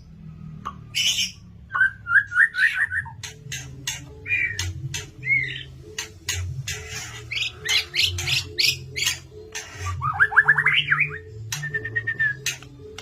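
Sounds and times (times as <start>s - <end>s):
songbird singing: 0.0s - 13.0s
background music with low beat: 3.0s - 13.0s.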